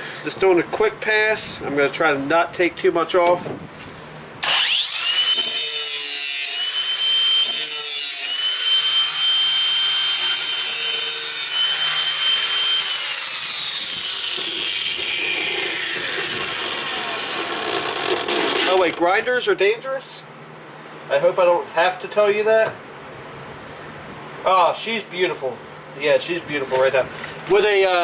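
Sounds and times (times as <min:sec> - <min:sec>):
angle grinder grinding metal: 0:04.4 - 0:19.1.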